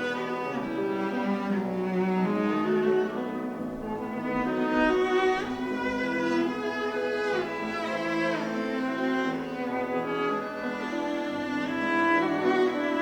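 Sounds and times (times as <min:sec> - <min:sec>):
cello playing sustained notes: 0:00.0 - 0:13.0
violin playing sustained notes: 0:00.0 - 0:13.0.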